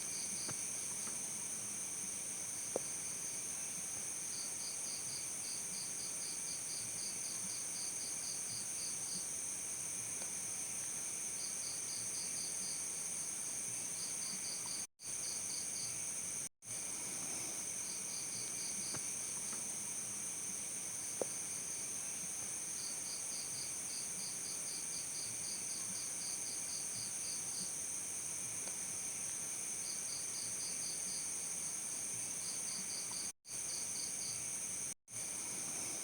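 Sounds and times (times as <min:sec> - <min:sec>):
crickets chirping: 0:10.2 - 0:36.0.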